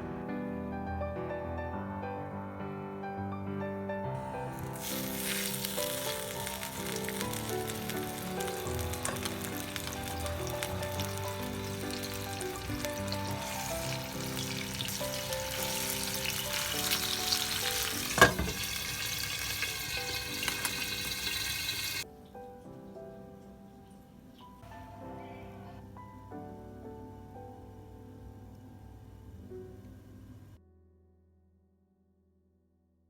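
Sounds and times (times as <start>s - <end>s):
soft piano music: 0.0s - 31.6s
food sizzling in a pan: 4.2s - 22.0s.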